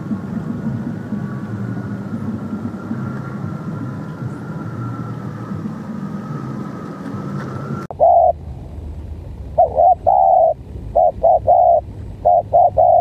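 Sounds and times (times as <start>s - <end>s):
background hum: 0.0s - 13.0s
dove cooing: 7.9s - 8.4s, 9.6s - 13.0s.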